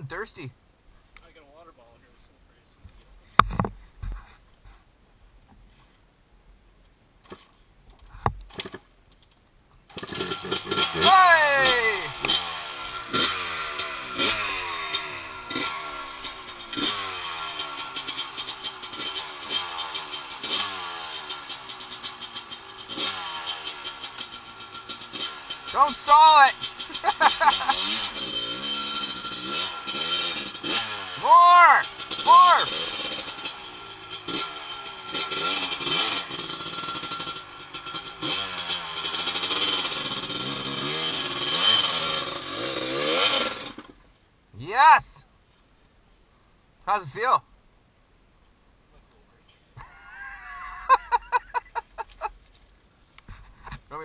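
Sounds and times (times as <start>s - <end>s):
dirt bike engine revving: 9.9s - 44.0s, 50.5s - 52.3s.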